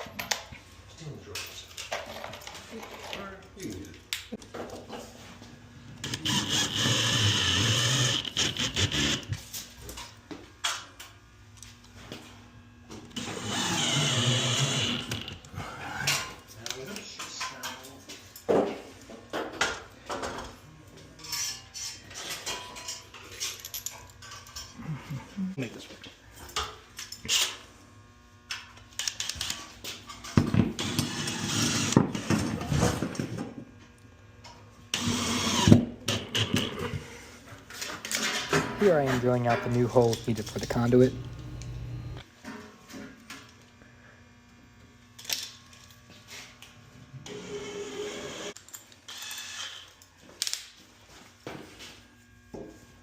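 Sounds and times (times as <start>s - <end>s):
power drill running: 6.0s - 9.4s, 13.2s - 15.3s, 38.6s - 42.2s
hardware clicks and knocks: 38.3s - 42.2s.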